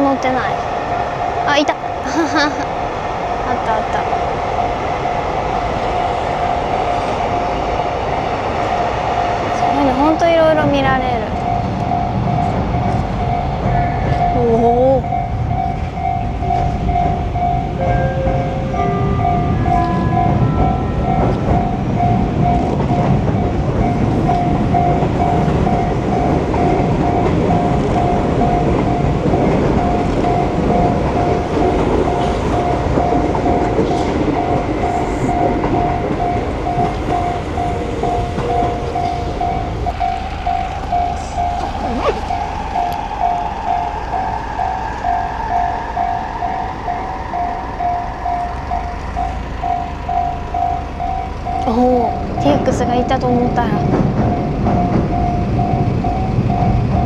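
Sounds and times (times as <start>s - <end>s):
level crossing warning bell: 0.0s - 57.0s
train rumbling and rail clatter: 0.0s - 57.0s
faint rising whine: 34.8s - 52.4s.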